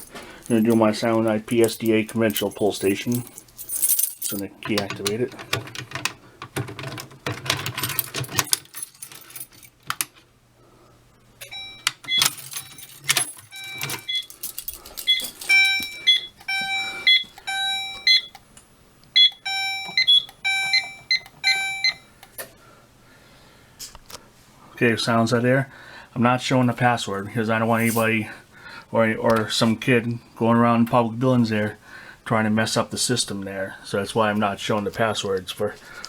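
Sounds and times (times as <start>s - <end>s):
keys rattling in a lock: 0.0s - 10.2s, 11.4s - 18.4s, 27.7s - 28.2s
keypad beeps: 11.4s - 12.8s, 13.5s - 14.3s, 15.1s - 18.4s, 19.1s - 22.2s.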